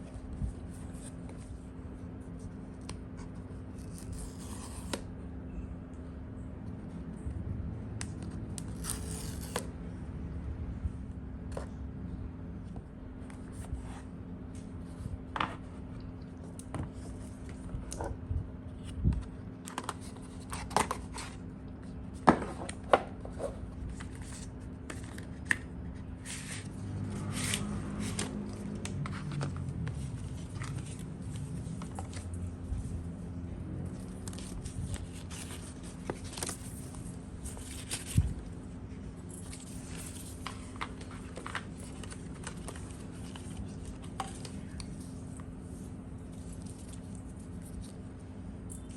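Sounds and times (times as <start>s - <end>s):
steady low hum: 0.0s - 48.9s.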